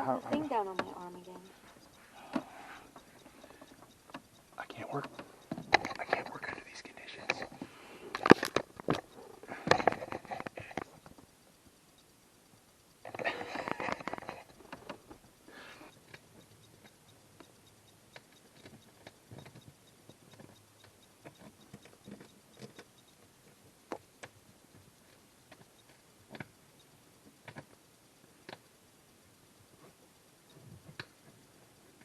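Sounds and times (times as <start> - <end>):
tools clicking and tapping: 0.2 - 6.6, 15.8 - 24.9.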